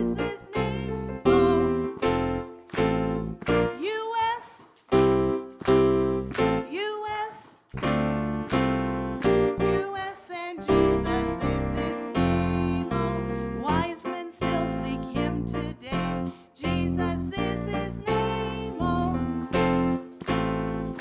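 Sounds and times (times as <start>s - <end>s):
voices singing church song: 0.0s - 1.9s, 9.7s - 15.2s, 16.6s - 19.1s
keyboard playing chords: 0.0s - 3.8s, 5.0s - 6.7s, 7.8s - 10.0s, 10.6s - 21.0s.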